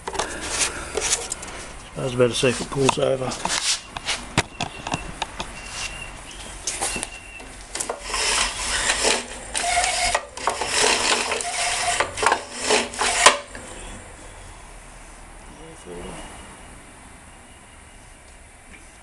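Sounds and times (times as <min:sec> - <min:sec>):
lawnmower starter cord pulled: 0:07.7 - 0:13.6.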